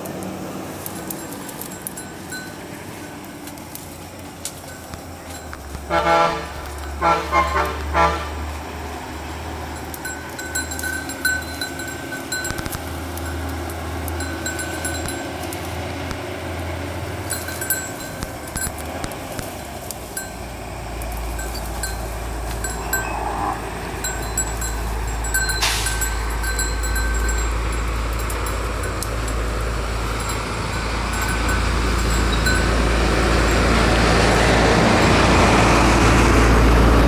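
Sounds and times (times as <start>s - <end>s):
goat bells clinking: 0.0s - 35.2s
road traffic rumble: 0.0s - 37.0s.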